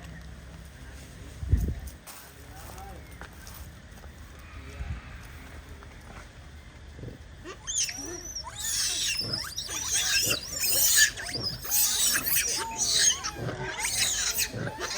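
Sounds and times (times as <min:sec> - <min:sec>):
macaques calling: 0:07.4 - 0:14.9.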